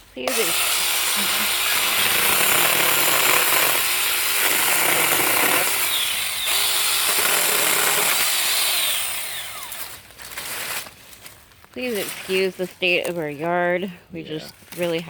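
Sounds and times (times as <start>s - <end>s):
electric chainsaw cutting wood: 0.2s - 10.9s.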